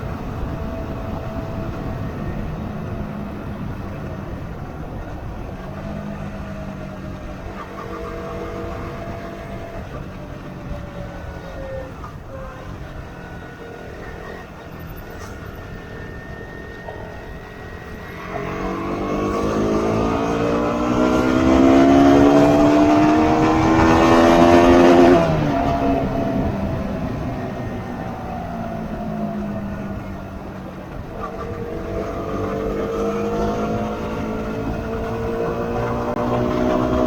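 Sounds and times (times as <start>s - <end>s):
motorcycle engine running: 0.0s - 37.0s
engine revving up in pitch: 15.2s - 37.0s.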